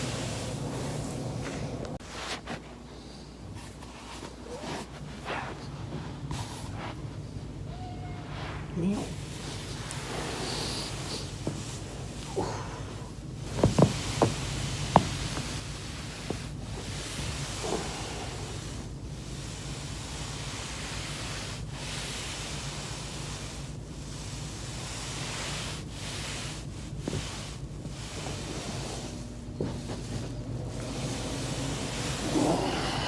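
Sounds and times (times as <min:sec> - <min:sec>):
foam roller rushing hiss: 0:00.0 - 0:02.4, 0:08.2 - 0:33.0.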